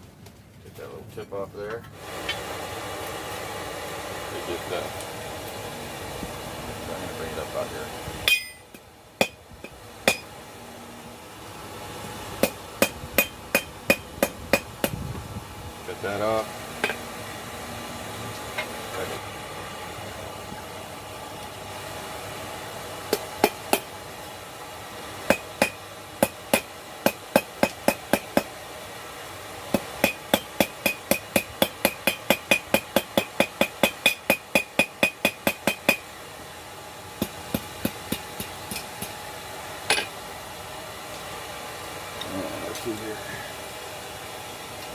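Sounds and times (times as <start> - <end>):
hammer striking steel on anvil: 8.2 - 10.3, 12.4 - 14.7, 16.8 - 17.0, 25.3 - 28.5, 29.7 - 36.0, 37.2 - 39.2, 39.9 - 40.2.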